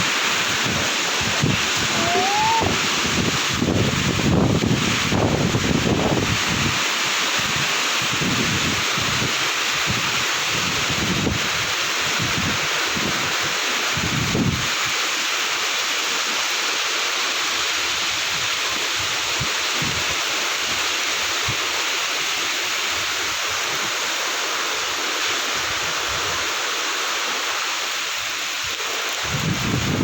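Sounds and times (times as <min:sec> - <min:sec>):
wind buffeting microphone: 0:00.0 - 0:06.8, 0:29.2 - 0:30.0
heavy rain pouring: 0:00.0 - 0:30.0.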